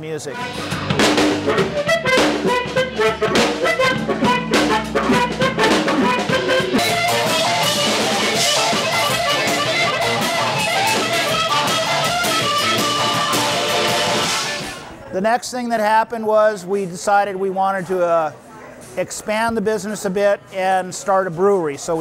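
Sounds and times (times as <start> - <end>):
busy drum beat: 0.3 - 14.8
blues band music: 0.3 - 15.0.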